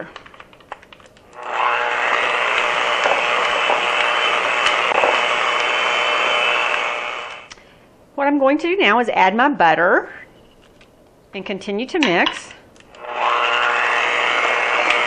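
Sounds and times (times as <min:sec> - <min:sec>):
electric mixer running: 0:01.2 - 0:07.5, 0:12.9 - 0:15.0.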